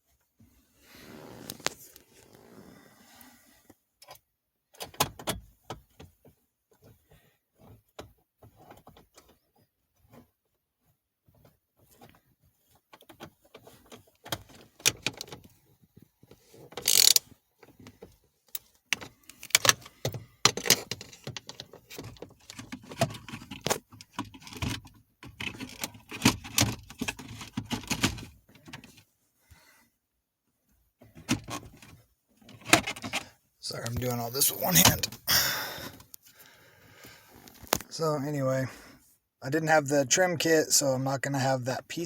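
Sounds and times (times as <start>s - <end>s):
plastic and metal clicks and rattles: 16.7s - 17.2s, 18.5s - 28.8s.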